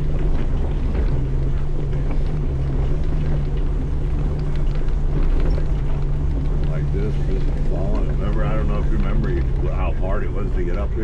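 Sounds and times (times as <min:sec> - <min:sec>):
light knocks and rattles: 0:00.0 - 0:11.0
vehicle engine running: 0:00.0 - 0:11.0.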